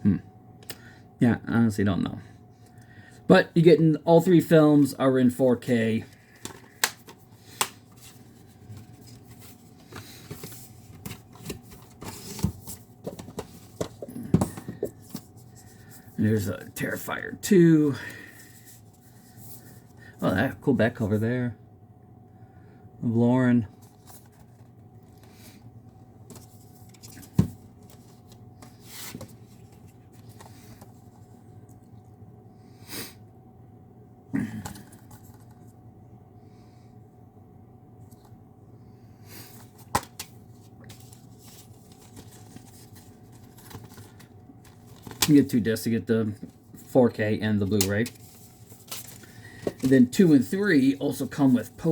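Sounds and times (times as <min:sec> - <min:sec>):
disc cases rustling and clicking: 0:06.0 - 0:15.9, 0:23.8 - 0:25.4, 0:26.2 - 0:31.3, 0:39.6 - 0:46.9, 0:47.6 - 0:50.9
plastic case rustles and taps: 0:10.0 - 0:15.3.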